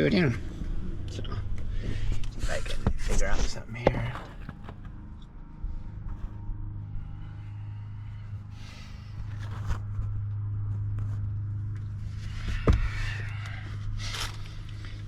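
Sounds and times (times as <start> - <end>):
steady low hum: 0.0 - 15.0
rustling and handling noises: 2.9 - 7.3, 8.6 - 15.0.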